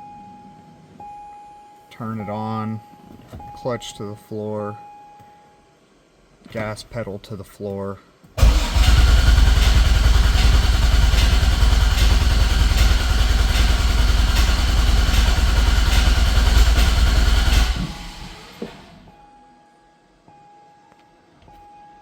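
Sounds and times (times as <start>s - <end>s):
car engine cranking on starter: 8.4s - 19.1s.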